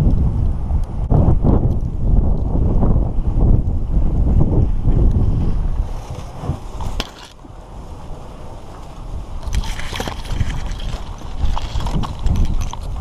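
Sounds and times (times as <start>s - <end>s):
wind buffeting microphone: 0.0s - 13.0s
clothing and gear rustling: 5.4s - 7.4s.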